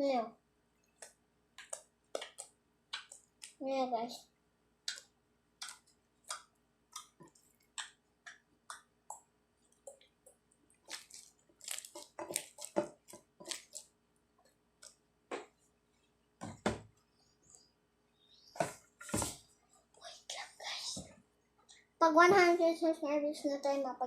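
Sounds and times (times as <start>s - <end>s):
deep slime squelch: 4.8s - 9.0s, 10.8s - 13.9s
slime squished by hand: 10.8s - 13.9s.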